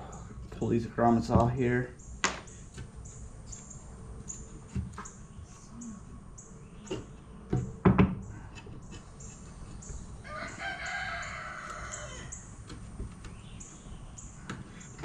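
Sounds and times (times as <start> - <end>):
sharp knocks: 2.2 - 2.5
rooster crowing: 10.2 - 12.6.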